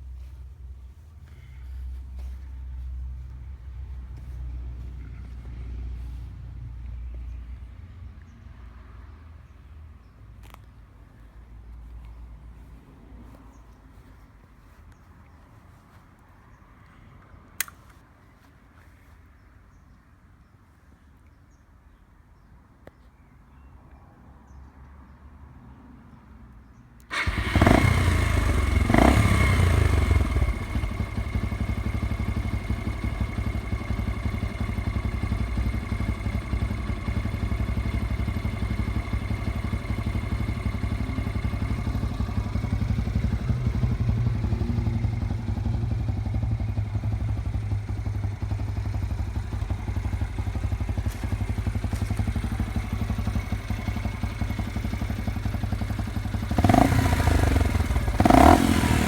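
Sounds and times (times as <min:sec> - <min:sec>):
motorcycle engine starting and idling: 0:17.6 - 0:18.0, 0:27.0 - 0:59.0.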